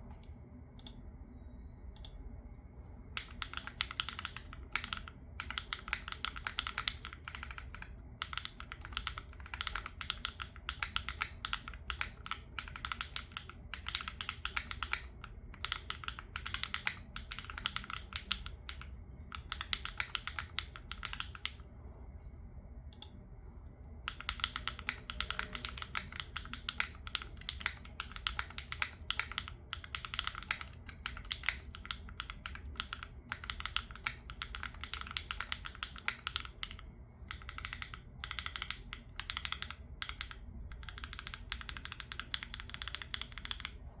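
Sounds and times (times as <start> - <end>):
mechanical keyboard typing: 3.1 - 21.6, 24.1 - 43.8.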